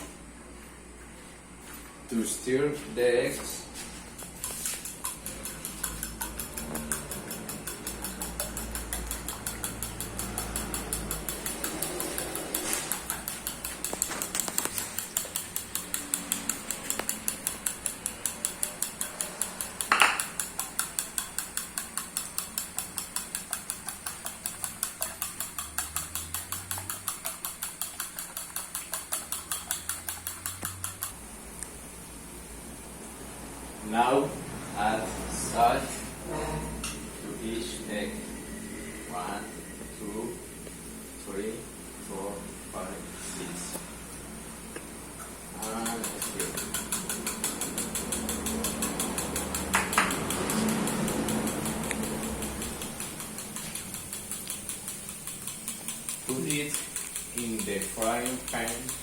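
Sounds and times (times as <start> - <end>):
whisk clicking against bowl: 4.2 - 31.2, 45.6 - 59.0
knock on bowl: 19.9 - 20.4.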